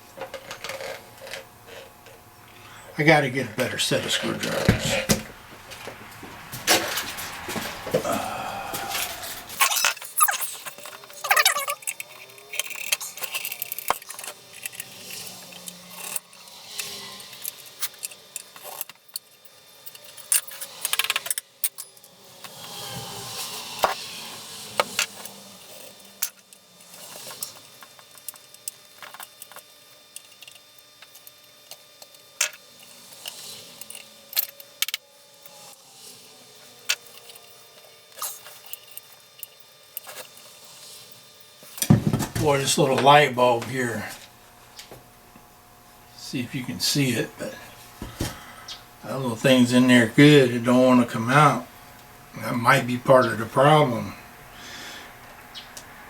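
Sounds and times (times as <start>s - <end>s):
metal parts clinking and rattling: 8.9s - 22.6s, 24.8s - 35.7s, 36.6s - 42.3s.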